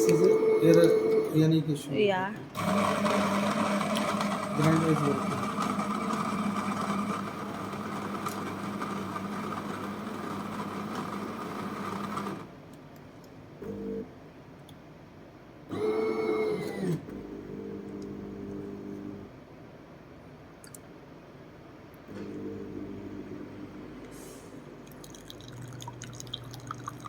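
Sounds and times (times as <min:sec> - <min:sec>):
coffee grinder running: 0:02.6 - 0:12.4.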